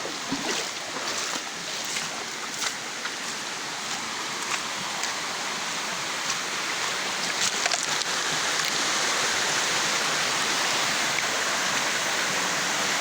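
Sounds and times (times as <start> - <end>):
stream flowing over rocks: 0.0 - 13.0
small clicks and splashes: 7.3 - 8.8.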